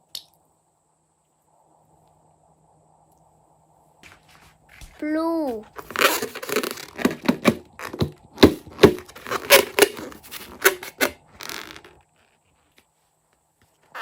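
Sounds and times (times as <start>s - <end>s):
slime squelching and popping: 5.7s - 11.1s.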